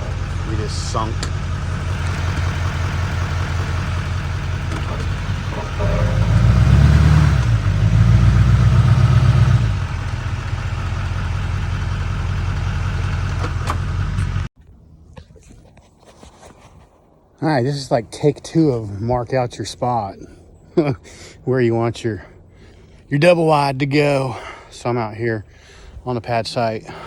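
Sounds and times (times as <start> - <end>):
vehicle engine revving: 0.0 - 14.5.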